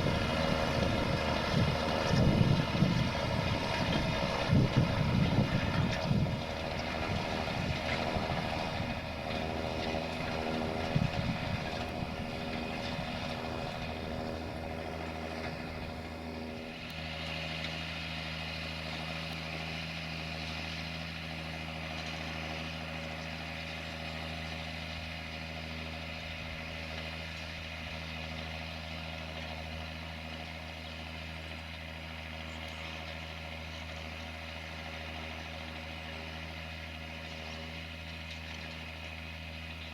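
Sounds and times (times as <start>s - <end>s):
wind on microphone: 0.0s - 9.0s, 10.6s - 14.7s
tractor engine running: 0.0s - 39.9s.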